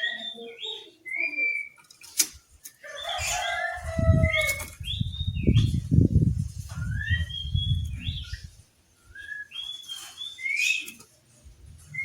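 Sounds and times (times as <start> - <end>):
bird singing whistled phrases: 0.0 - 1.8, 6.8 - 8.5, 9.1 - 10.9.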